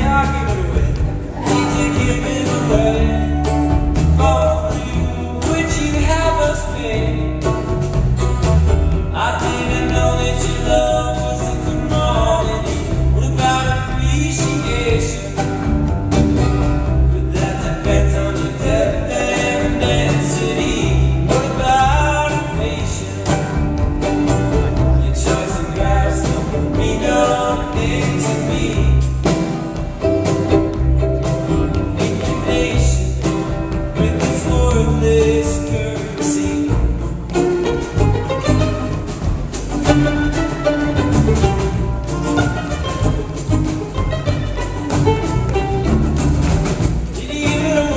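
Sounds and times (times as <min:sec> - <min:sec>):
man singing: 0:00.0 - 0:07.7, 0:09.1 - 0:15.7, 0:17.0 - 0:23.6, 0:24.5 - 0:29.4, 0:31.4 - 0:39.0, 0:47.1 - 0:47.9
acoustic string instruments: 0:00.0 - 0:47.9.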